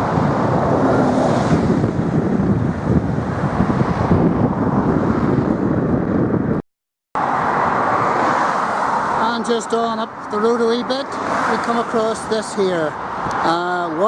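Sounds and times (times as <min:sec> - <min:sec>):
road traffic passing: 0:00.0 - 0:06.6, 0:07.2 - 0:14.0
wind buffeting microphone: 0:00.0 - 0:06.6.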